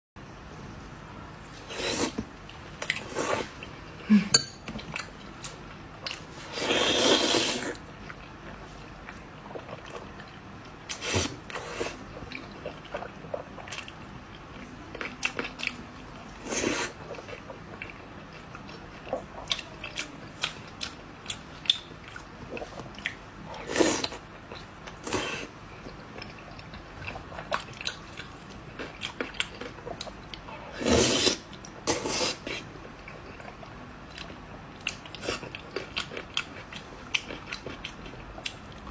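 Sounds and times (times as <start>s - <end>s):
person chewing and crunching: 31.1s - 38.9s.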